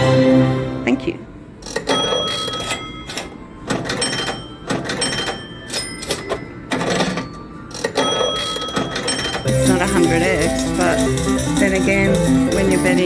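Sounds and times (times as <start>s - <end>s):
electronic bell chimes: 7.4s - 13.0s.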